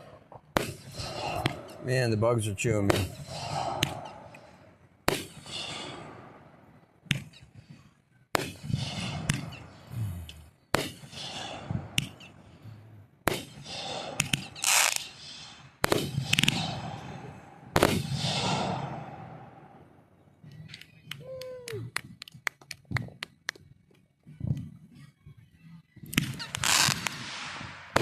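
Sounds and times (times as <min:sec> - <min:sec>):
fireworks bangs with rolling echo: 0:00.0 - 0:01.7, 0:15.8 - 0:17.1, 0:17.7 - 0:19.0, 0:26.1 - 0:28.0
fireworks hissing crackles: 0:14.2 - 0:16.6, 0:26.4 - 0:28.0.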